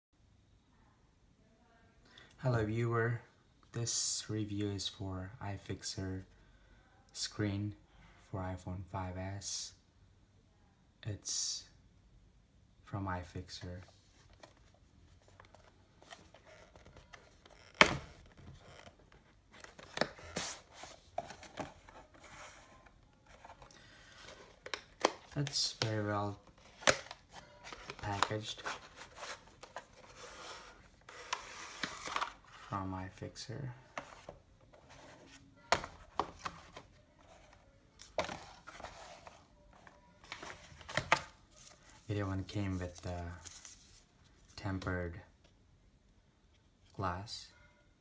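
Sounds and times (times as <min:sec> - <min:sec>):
box rustling: 0:14.1 - 0:32.8, 0:33.9 - 0:44.5.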